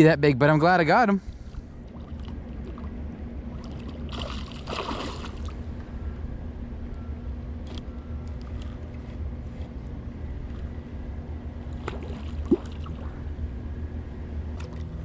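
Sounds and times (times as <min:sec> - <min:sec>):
low rumble and hum: 0:00.0 - 0:15.0
water splashing: 0:01.8 - 0:05.7, 0:11.7 - 0:13.2.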